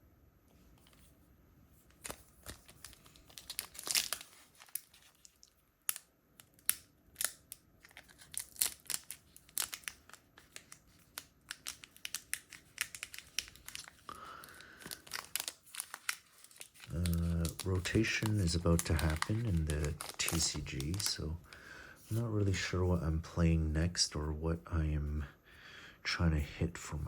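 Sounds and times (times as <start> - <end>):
foil wrapper crinkling and tearing: 1.9 - 22.8
cards clicking: 9.0 - 21.4.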